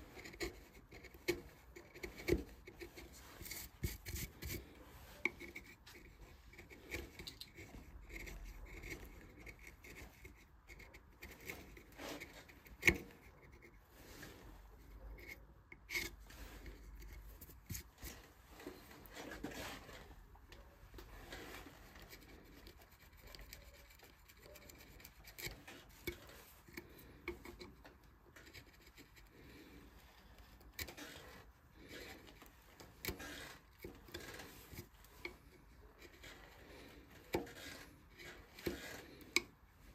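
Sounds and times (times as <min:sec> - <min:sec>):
carving tools scraping wood: 0:00.0 - 0:39.9.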